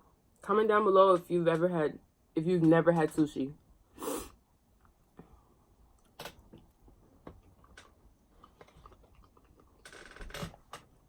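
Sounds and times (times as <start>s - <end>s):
chewing sushi close-up: 8.4s - 9.8s.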